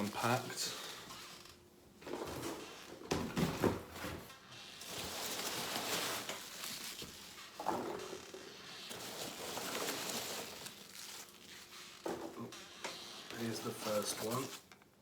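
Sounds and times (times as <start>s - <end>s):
packing material rustling: 4.6s - 14.8s.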